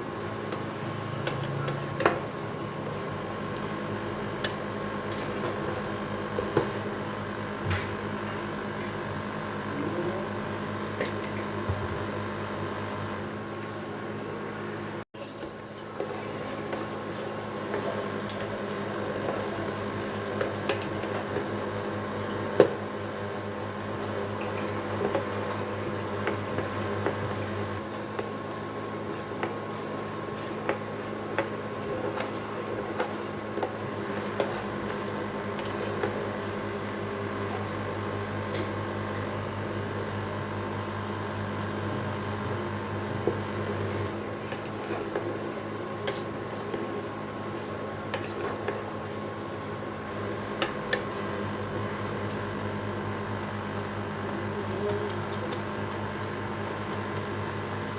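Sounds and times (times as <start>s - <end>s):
spoon scraping in a pot: 23.0s - 36.7s, 43.6s - 49.2s.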